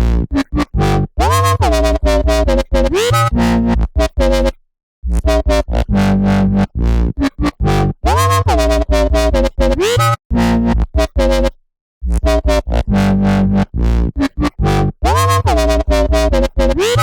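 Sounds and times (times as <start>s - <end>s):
dubstep synth bassline: 1.3s - 4.4s, 7.6s - 11.5s, 12.2s - 17.0s.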